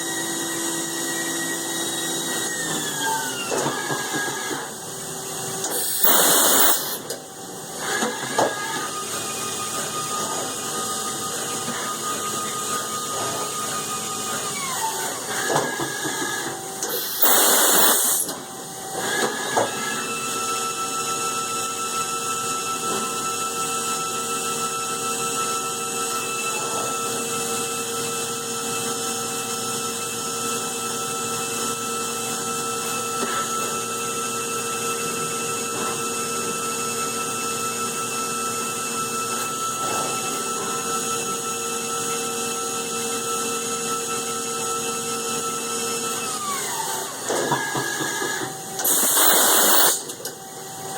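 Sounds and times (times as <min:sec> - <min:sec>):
milling machine spindle whining: 0:00.0 - 0:20.4, 0:44.6 - 0:50.9.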